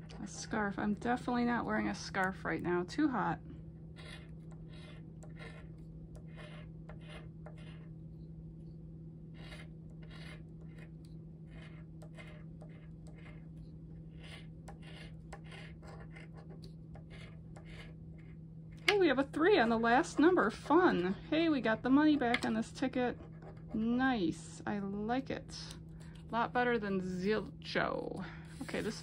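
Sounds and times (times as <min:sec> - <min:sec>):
low electrical hum: 0:00.0 - 0:29.0
lottery ticket scratching: 0:04.0 - 0:07.9, 0:09.4 - 0:10.9, 0:11.5 - 0:13.5, 0:14.1 - 0:18.0, 0:28.5 - 0:29.0.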